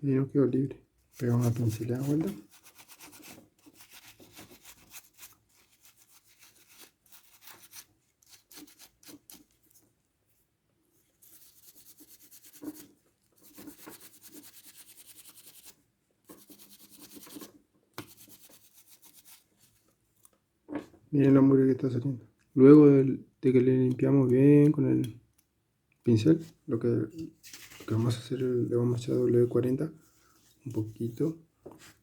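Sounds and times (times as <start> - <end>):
paintbrush scratching on fan: 1.1 - 9.4, 11.2 - 19.4.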